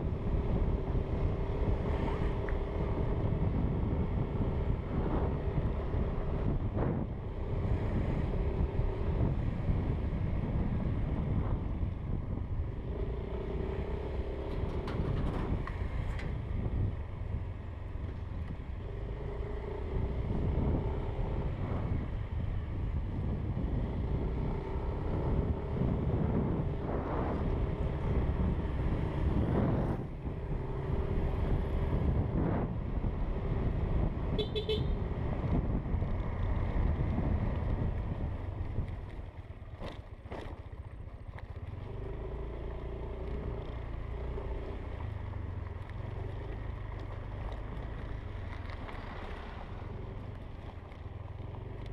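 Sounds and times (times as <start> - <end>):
wind rushing over microphone: 0.0 - 39.7.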